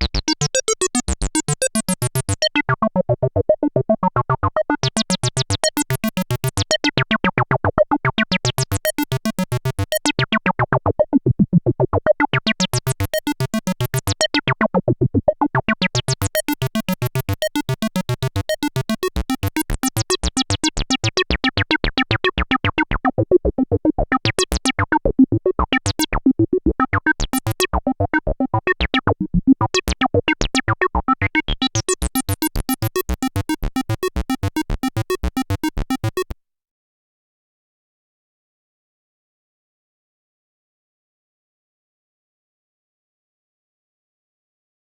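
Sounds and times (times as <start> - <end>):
squelchy synth bassline: 0.0 - 3.0, 4.1 - 6.8, 8.4 - 10.2, 12.6 - 14.6, 15.6 - 36.4.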